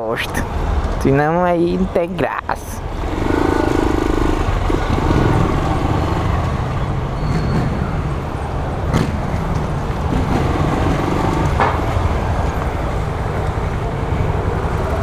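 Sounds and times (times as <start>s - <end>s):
road noise: 0.0s - 15.0s
motorcycle engine running: 2.9s - 6.8s.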